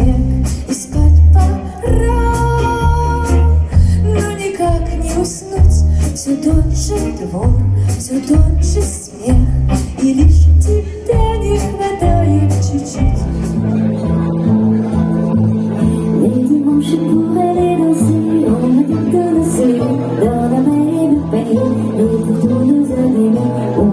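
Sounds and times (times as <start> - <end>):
person singing: 0.0 - 14.1, 14.8 - 23.9
band playing: 0.0 - 23.9.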